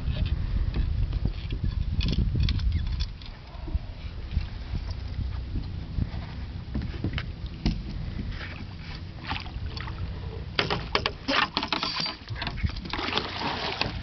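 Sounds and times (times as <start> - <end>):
wind and water rumble: 0.0 - 14.0
knocks and clatter on boat: 4.9 - 14.0.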